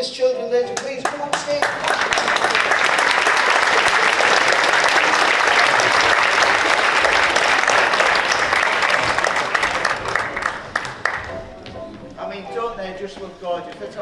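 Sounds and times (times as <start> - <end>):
audience applauding: 0.8 - 11.5.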